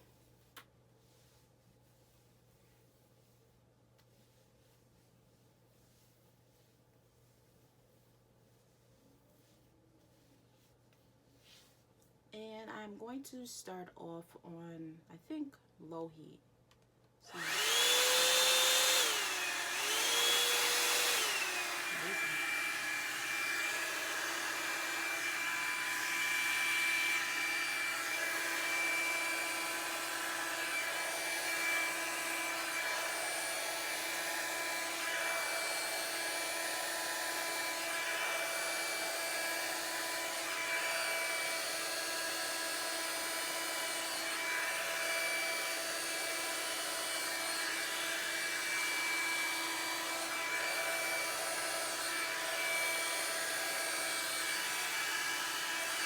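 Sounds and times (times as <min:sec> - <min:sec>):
hair dryer running: 0:17.3 - 0:56.0.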